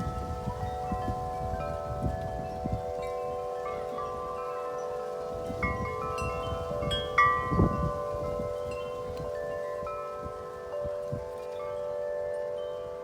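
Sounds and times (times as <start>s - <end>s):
wind buffeting microphone: 0.0s - 13.0s
wind chimes ringing: 0.0s - 13.0s.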